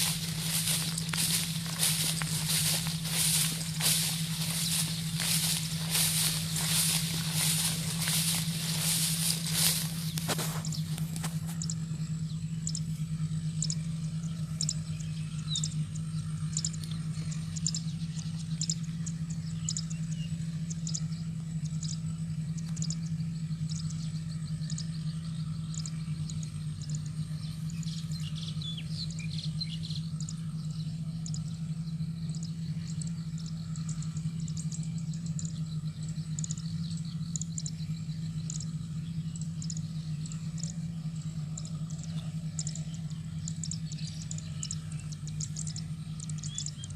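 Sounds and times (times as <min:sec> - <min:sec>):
high bird chirps: 0:00.0 - 0:11.8
combine harvester engine drone: 0:00.0 - 0:46.9.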